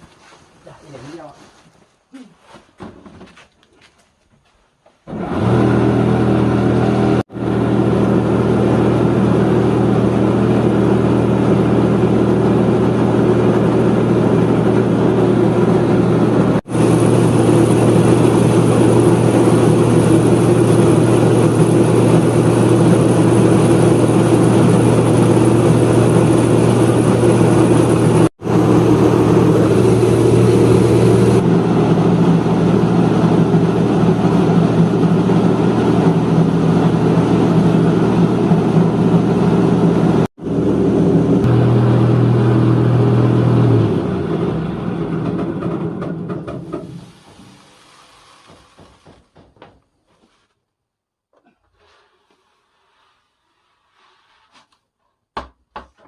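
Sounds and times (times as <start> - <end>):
farm machine engine running: 5.1 - 46.3.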